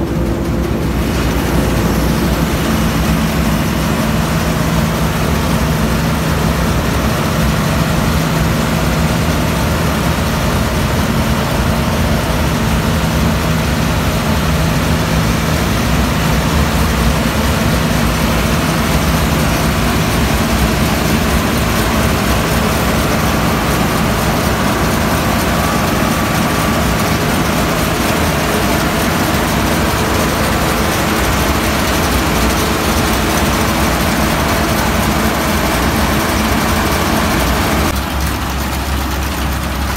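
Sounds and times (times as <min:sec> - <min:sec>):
combine harvester running: 0:00.0 - 0:39.9.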